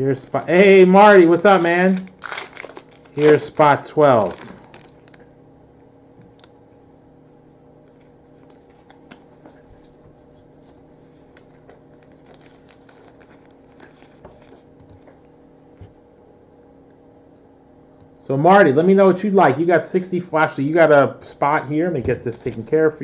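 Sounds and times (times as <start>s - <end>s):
trading cards being handled: 0.0s - 5.2s, 10.7s - 15.4s.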